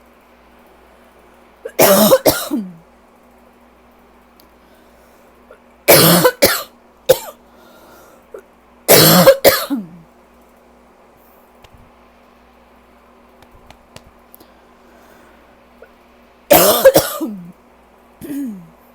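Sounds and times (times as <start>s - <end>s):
person coughing: 1.7s - 2.8s, 5.9s - 7.4s, 8.9s - 10.0s, 16.5s - 17.6s, 18.2s - 18.8s.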